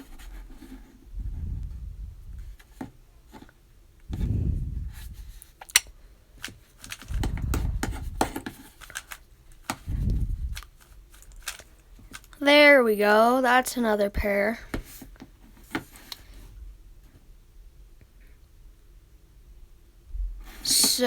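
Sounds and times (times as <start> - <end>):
plastic cube layers clicking: 5.6 - 12.4.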